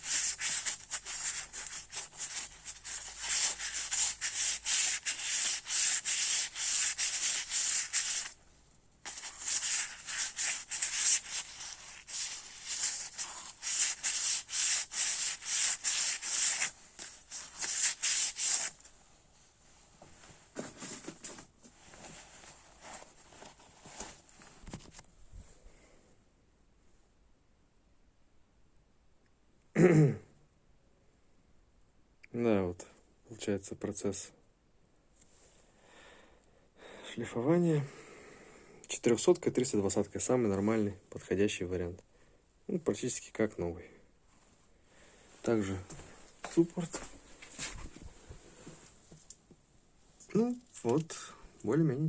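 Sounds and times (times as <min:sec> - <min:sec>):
sandpaper rubbing strokes: 0:00.0 - 0:08.4, 0:09.1 - 0:18.8
faint handling sounds: 0:00.0 - 0:25.9, 0:44.2 - 0:51.8.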